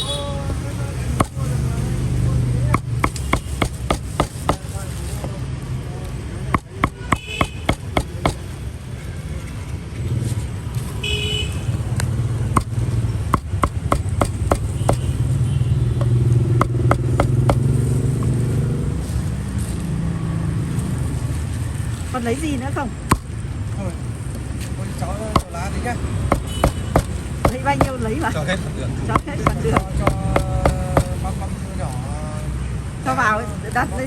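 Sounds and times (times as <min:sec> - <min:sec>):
street traffic hum: 0:00.0 - 0:34.0
cleaver chopping on wooden board: 0:01.1 - 0:01.6, 0:02.7 - 0:04.8, 0:06.5 - 0:08.5, 0:12.5 - 0:15.2, 0:16.0 - 0:17.8, 0:23.1 - 0:23.4, 0:25.3 - 0:28.1, 0:29.1 - 0:31.2.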